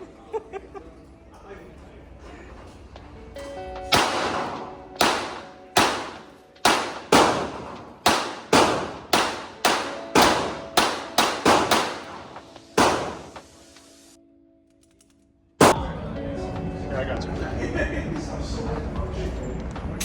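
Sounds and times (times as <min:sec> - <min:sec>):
pistol shots: 0:03.9 - 0:13.5.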